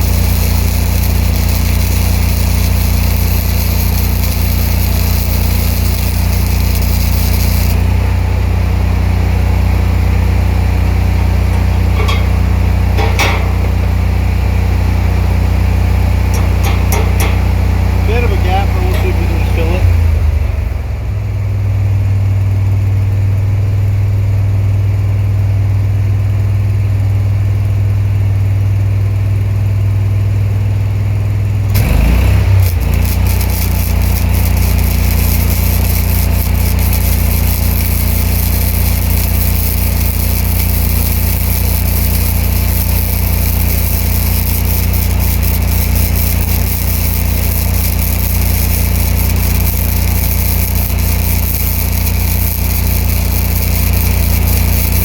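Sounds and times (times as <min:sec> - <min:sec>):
welding arc crackling: 0:00.0 - 0:08.8, 0:10.8 - 0:20.4, 0:31.7 - 0:55.0
generator engine running: 0:00.0 - 0:21.6, 0:30.4 - 0:55.0.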